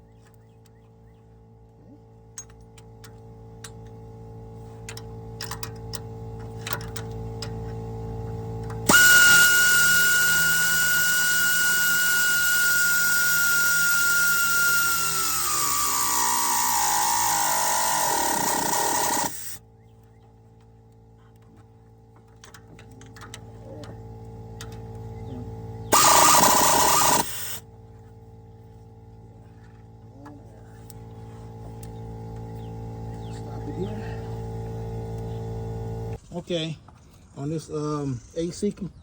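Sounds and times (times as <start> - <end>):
power tool motor whining: 5.5 - 19.6, 23.4 - 27.7, 30.8 - 36.2.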